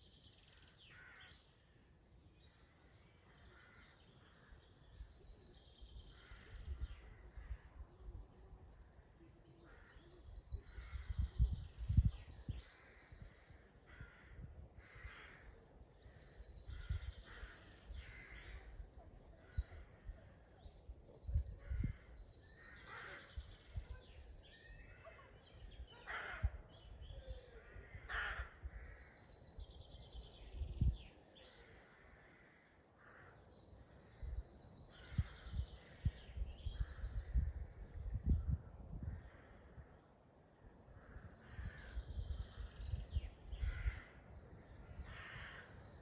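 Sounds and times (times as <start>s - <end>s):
woodland birds singing: 0.0s - 46.0s.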